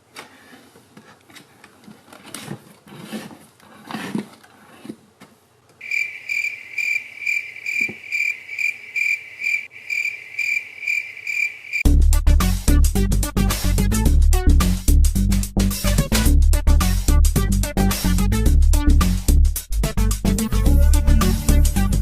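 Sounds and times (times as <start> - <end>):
cricket chirping trill: 5.8 - 11.8.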